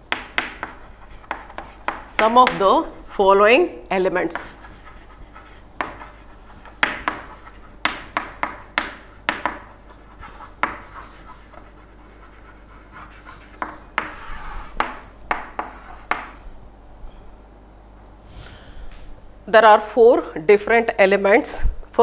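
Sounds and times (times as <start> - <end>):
pen tapping and scratching on surface: 0.1 - 2.8, 4.3 - 16.4.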